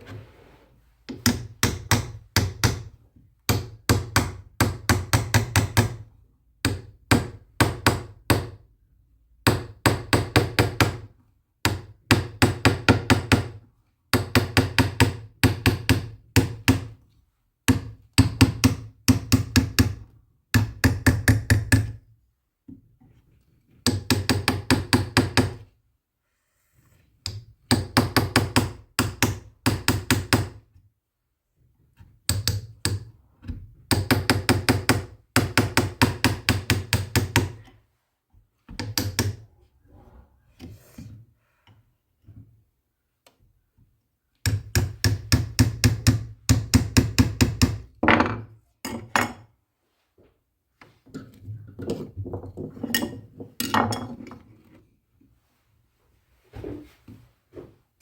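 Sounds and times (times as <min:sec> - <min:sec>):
hammer strikes on hard surface: 0:44.5 - 0:49.4.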